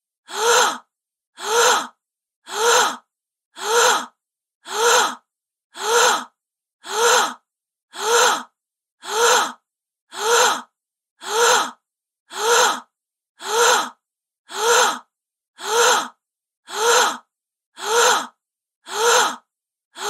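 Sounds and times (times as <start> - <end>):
woman gasping: 17.8 - 19.4.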